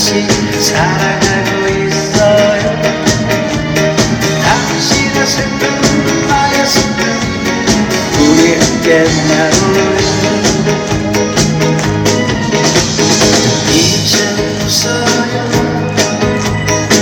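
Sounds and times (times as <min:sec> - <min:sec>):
person singing: 0:00.0 - 0:11.6, 0:12.3 - 0:17.0
live band playing pop song: 0:00.0 - 0:17.0
drum beat: 0:00.3 - 0:17.0.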